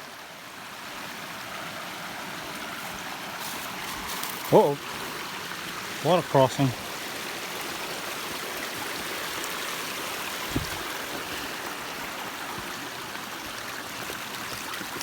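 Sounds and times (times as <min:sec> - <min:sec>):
stream rushing over rocks: 0:00.0 - 0:15.0
dull thump: 0:10.5 - 0:10.8.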